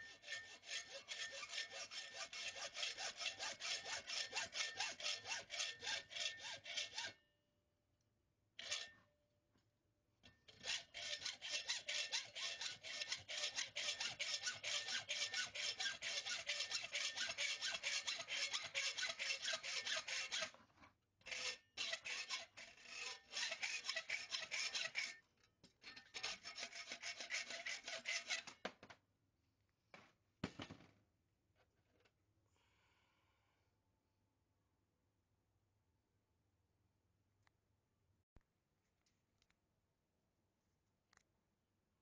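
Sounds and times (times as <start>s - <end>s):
hand tool rasping: 0.0s - 7.2s, 10.6s - 20.6s, 21.3s - 25.2s, 25.9s - 28.5s.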